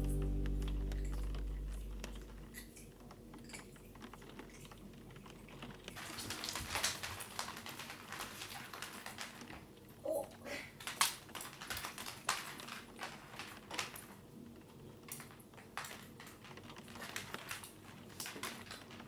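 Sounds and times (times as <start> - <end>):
background music: 0.0 - 2.5.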